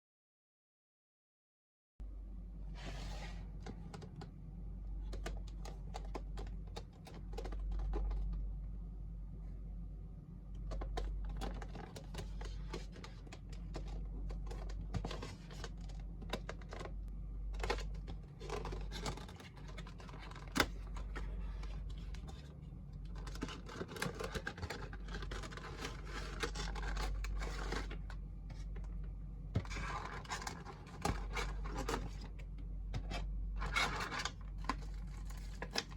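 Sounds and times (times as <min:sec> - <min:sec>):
low hum: 0:02.0 - 0:35.9.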